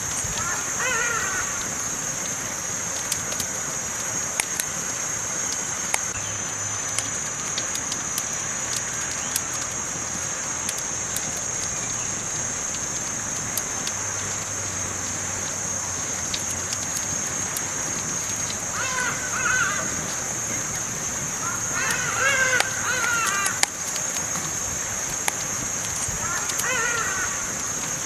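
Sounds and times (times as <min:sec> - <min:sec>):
campfire crackling: 0:00.0 - 0:28.0.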